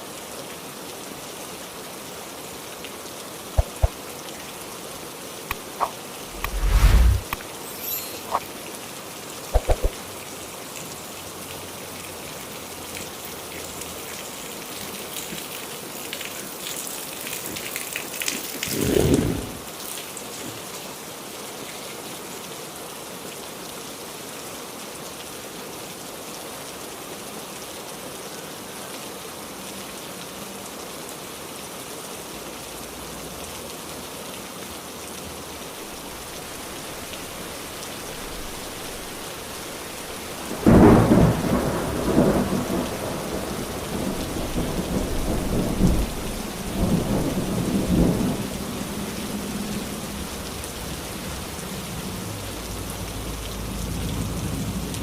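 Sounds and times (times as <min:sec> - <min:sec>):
heavy rain falling: 0:00.0 - 0:23.7, 0:24.6 - 0:55.0
low swell: 0:06.3 - 0:08.2.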